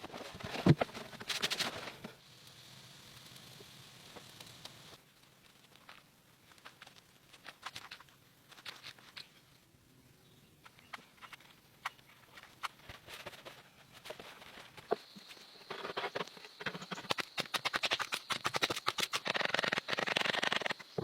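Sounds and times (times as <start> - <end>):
faint high hiss: 0.0 - 8.5.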